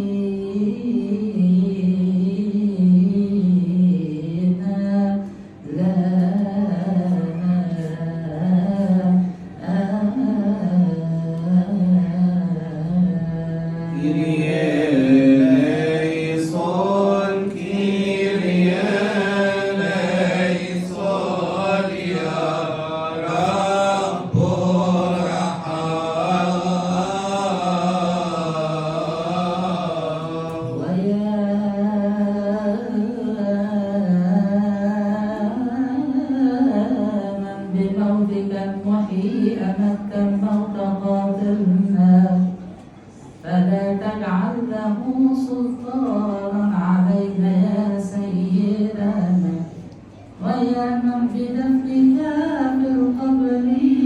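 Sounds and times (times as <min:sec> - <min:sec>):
liturgical chant singing: 0:05.7 - 0:42.6.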